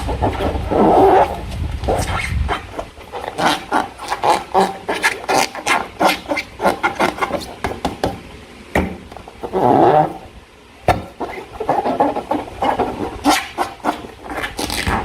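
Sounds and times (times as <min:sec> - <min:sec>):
slime squelching by hand: 0:00.0 - 0:07.6.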